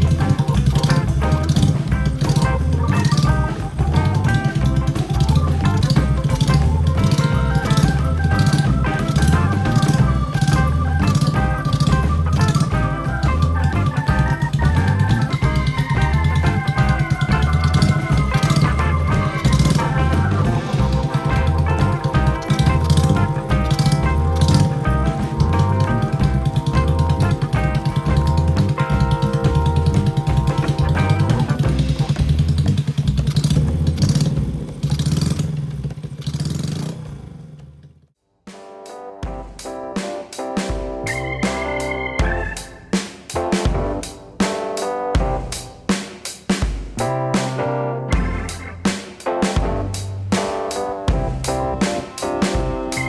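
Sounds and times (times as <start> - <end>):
upbeat music with pulsing bass: 0.0 - 35.4, 40.6 - 44.5, 47.0 - 53.0
motorcycle engine running: 0.0 - 38.1, 48.2 - 48.9, 51.1 - 53.0.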